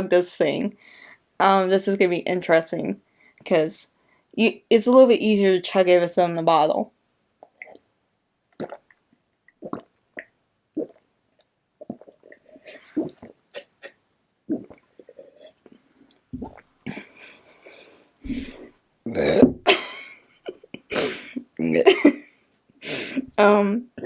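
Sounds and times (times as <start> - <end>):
person gulping soda: 7.4 - 7.9, 8.5 - 17.1.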